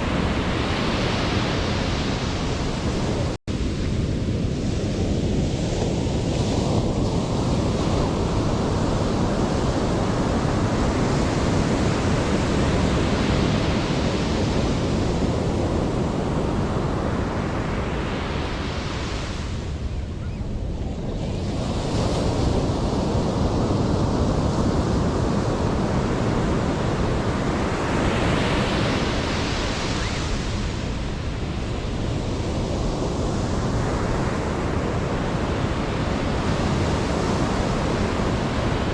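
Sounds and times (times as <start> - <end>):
ocean waves breaking: 20.6 - 38.9.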